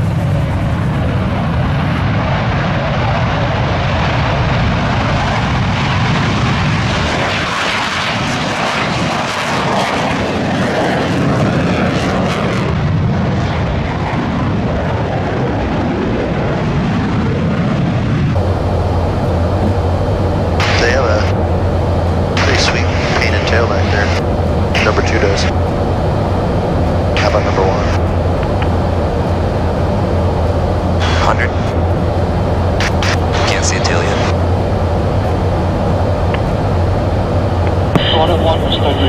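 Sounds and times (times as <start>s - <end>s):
aircraft engine roaring: 0.0s - 39.0s.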